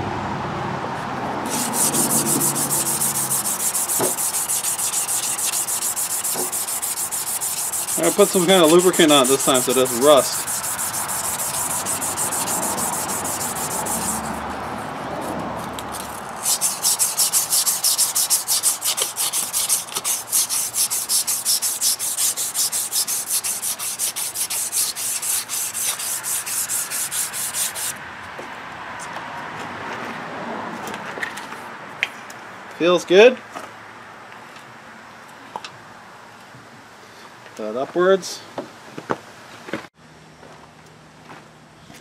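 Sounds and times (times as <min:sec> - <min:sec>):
emery cloth rubbing on steel shaft: 0:01.5 - 0:15.4, 0:16.0 - 0:27.9.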